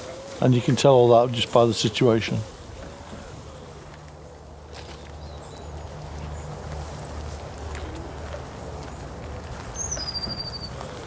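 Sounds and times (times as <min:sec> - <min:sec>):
faint bird chirps: 0:09.4 - 0:10.8.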